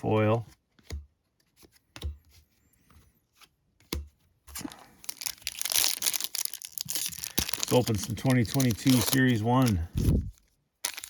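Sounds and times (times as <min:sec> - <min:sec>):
cards being handled: 0:00.5 - 0:11.0
foil wrapper tearing and crinkling: 0:04.6 - 0:10.1, 0:10.8 - 0:11.0.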